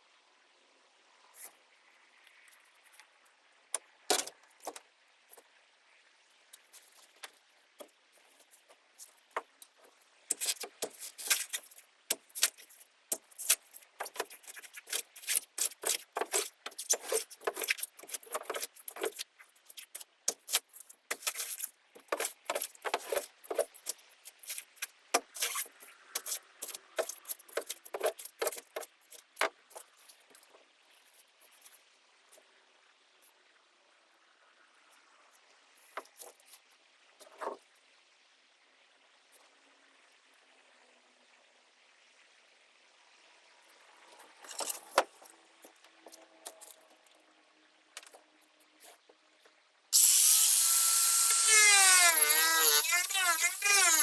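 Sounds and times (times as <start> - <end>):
wood and foam scraping and cracking: 6.6 - 30.6, 44.2 - 46.8, 50.8 - 54.0.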